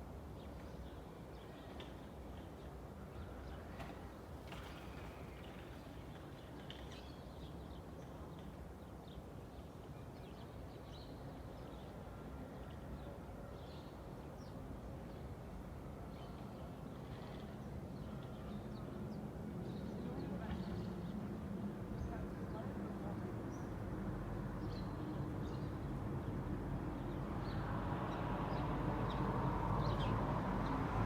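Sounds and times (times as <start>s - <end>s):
traffic rumble: 26.6s - 31.0s.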